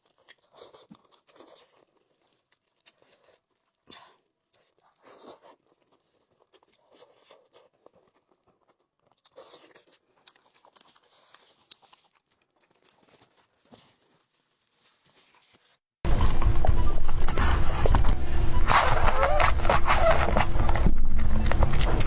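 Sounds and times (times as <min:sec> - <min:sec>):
person chewing crispy chicken: 0:00.0 - 0:22.0.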